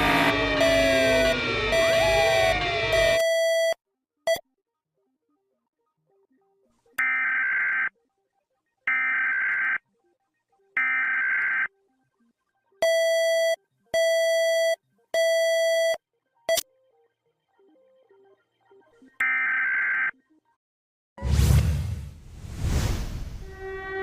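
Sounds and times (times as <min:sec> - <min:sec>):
screechy digital data tones: 0:00.0 - 0:03.2
harsh buzzing beeps: 0:00.0 - 0:04.4.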